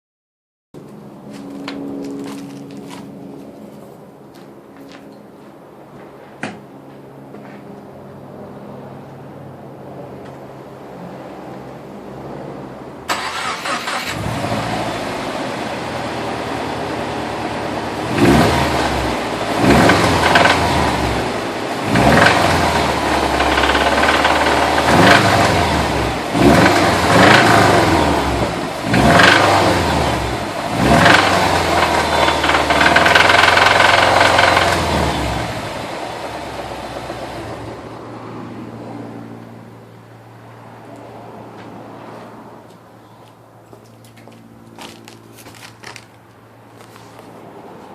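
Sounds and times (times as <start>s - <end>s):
car engine starting and revving: 13.1s - 37.8s
engine knocking: 23.4s - 24.9s, 31.9s - 34.8s.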